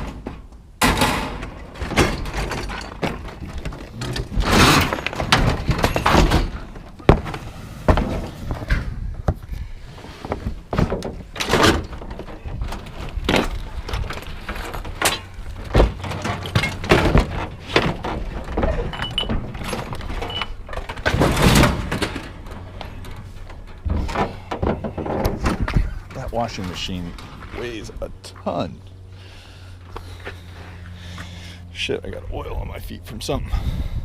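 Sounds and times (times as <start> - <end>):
metal knocks and clanks: 0.0 - 9.4, 10.4 - 27.5.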